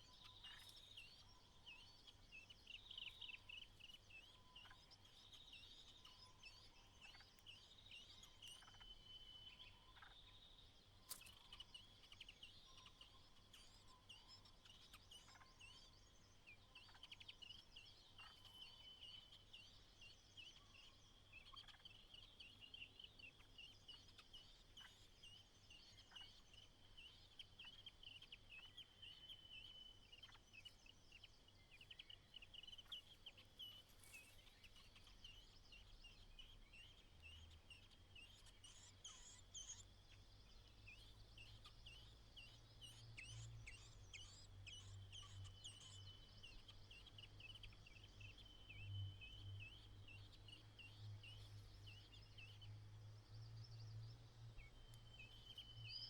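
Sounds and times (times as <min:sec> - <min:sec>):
faint rapid bird chattering: 0:20.6 - 0:53.4.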